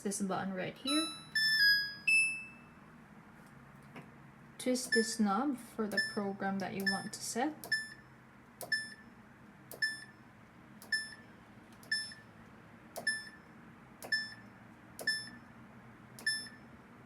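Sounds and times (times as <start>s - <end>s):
knob click: 5.9s - 7.9s, 8.6s - 8.9s, 9.7s - 10.0s, 13.0s - 13.2s, 14.0s - 14.3s, 15.0s - 15.3s, 16.2s - 16.6s.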